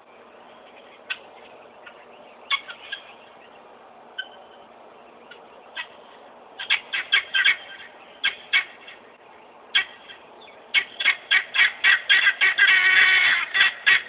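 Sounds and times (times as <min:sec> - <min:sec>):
guinea fowl squawking: 0:00.6 - 0:03.3, 0:04.2 - 0:04.6, 0:05.2 - 0:09.0, 0:09.7 - 0:14.0.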